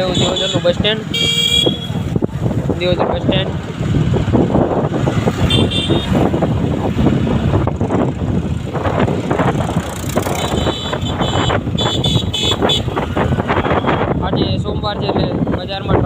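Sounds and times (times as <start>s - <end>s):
wind noise on microphone: 0.0s - 16.0s.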